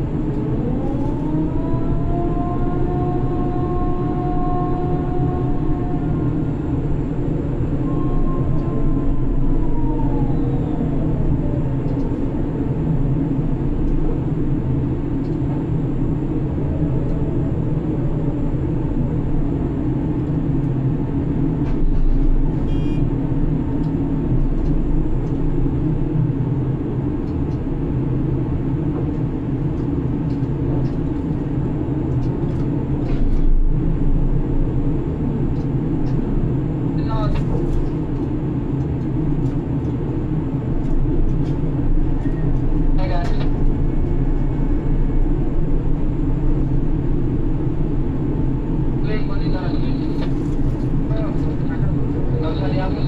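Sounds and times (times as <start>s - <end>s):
crane machinery rumble and hum: 0.0s - 53.0s.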